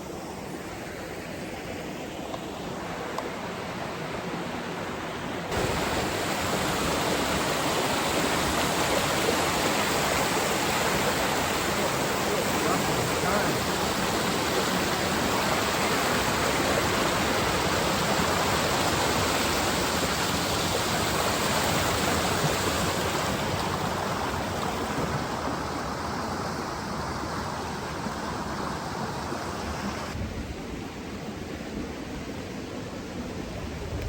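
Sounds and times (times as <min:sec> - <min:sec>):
waterfall rushing: 0:04.6 - 0:30.2.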